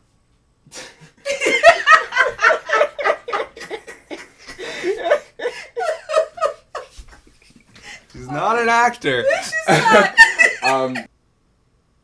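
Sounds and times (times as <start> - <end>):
hearty laughter: 0.8 - 7.9, 9.3 - 11.1.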